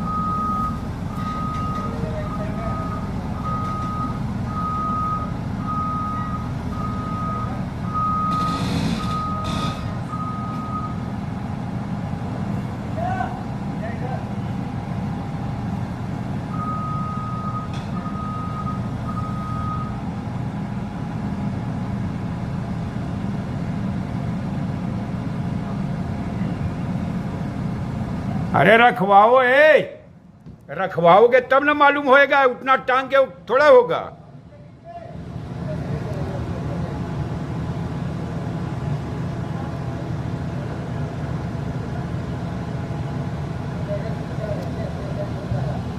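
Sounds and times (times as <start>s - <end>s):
reversing alarm beeps: 0.0s - 11.0s, 16.5s - 20.0s
bulldozer diesel engine: 0.0s - 45.9s.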